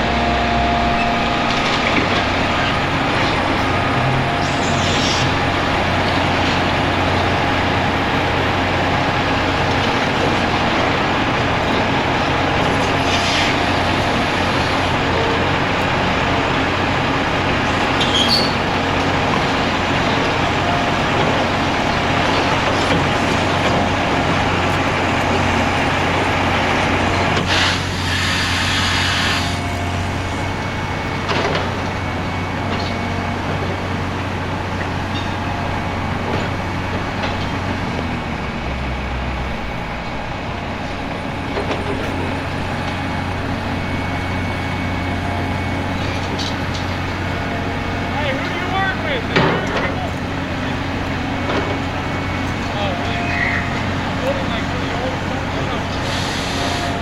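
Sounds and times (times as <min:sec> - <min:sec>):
diesel machinery engine hum: 0:00.0 - 0:57.0
burst of hissing: 0:27.5 - 0:29.6.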